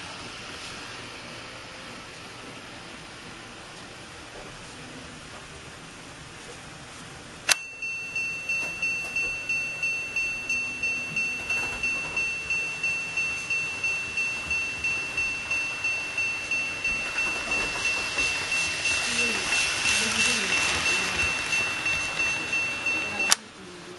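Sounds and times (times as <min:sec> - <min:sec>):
electronic warning bell ringing: 0:07.5 - 0:23.4.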